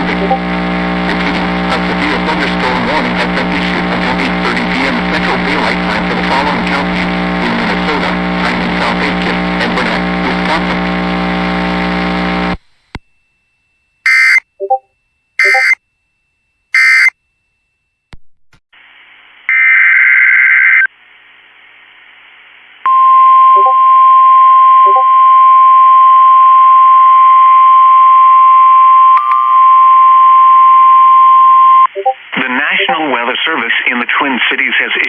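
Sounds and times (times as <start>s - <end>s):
radio static: 0.0s - 13.0s, 31.9s - 35.0s
warning alarm tone: 15.4s - 15.8s.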